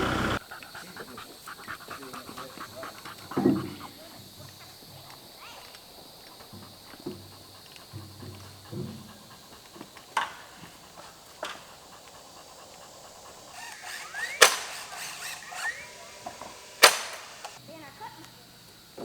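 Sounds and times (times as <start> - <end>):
loud sharp crack: 13.6 - 17.6.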